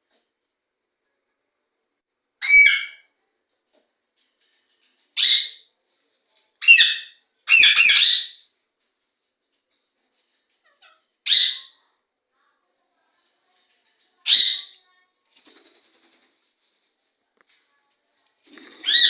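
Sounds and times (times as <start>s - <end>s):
parrots squawking: 2.4s - 3.0s, 6.6s - 8.4s, 10.6s - 11.8s.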